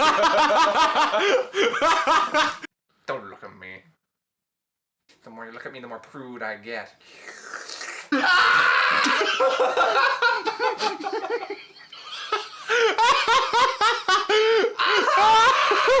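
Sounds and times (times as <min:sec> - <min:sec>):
hearty laughter: 0:00.0 - 0:02.7, 0:09.0 - 0:16.0.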